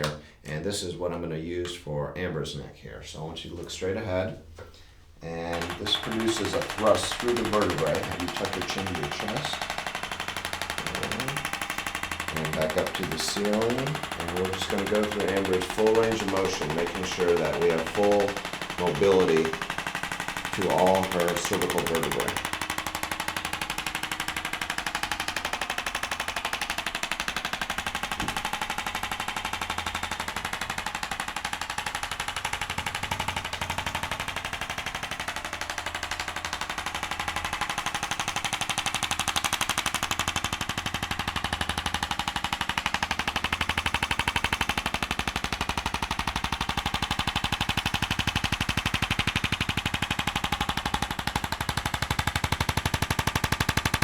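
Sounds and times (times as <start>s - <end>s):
rapid mechanical tapping: 3.4s - 54.0s.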